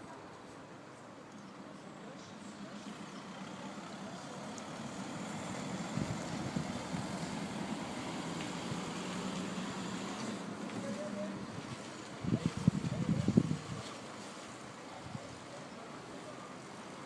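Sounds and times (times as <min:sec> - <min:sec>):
engine running: 0:02.3 - 0:14.7.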